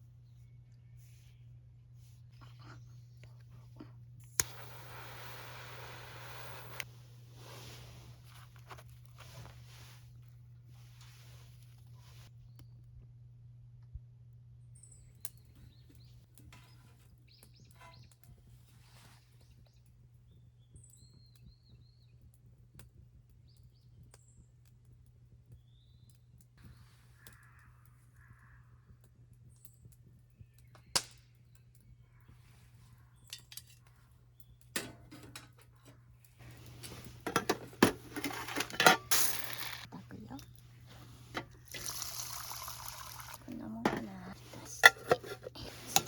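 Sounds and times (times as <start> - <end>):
clattering: 36.7 - 39.9.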